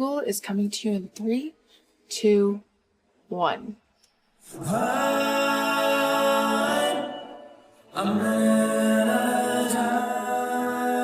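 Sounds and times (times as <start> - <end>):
a cappella vocal chord: 4.4 - 11.0.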